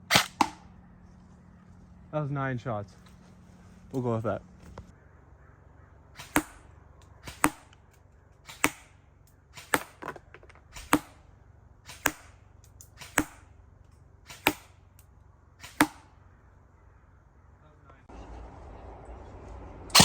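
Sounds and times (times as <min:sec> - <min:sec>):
airsoft rifle shots: 0:00.0 - 0:00.6, 0:06.1 - 0:07.8, 0:08.4 - 0:10.1, 0:10.7 - 0:11.2, 0:11.8 - 0:13.5, 0:14.2 - 0:14.8, 0:15.6 - 0:16.1.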